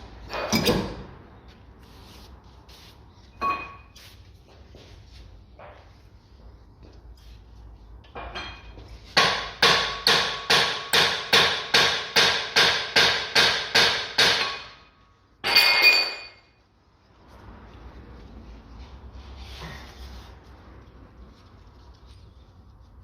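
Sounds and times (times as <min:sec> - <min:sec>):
hammer striking steel: 0:08.4 - 0:16.5.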